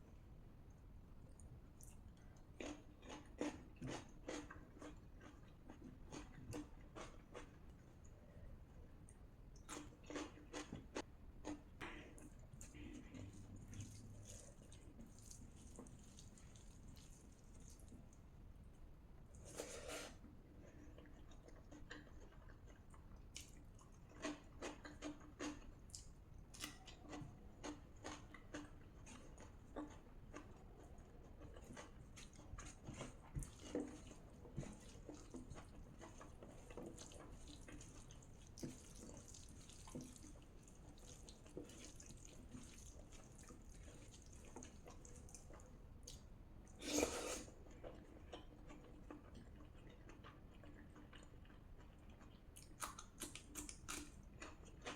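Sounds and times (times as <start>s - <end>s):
person chewing wet food: 1.3s - 8.4s, 9.0s - 18.2s, 19.3s - 54.9s.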